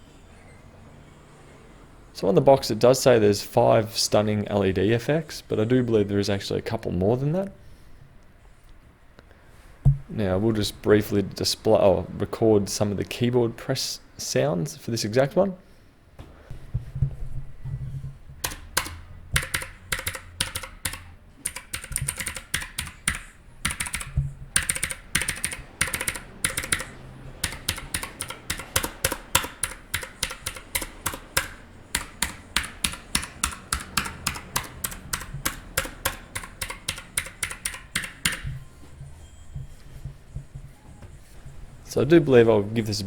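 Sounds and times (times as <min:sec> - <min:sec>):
mechanical keyboard clicking: 0:18.4 - 0:38.7.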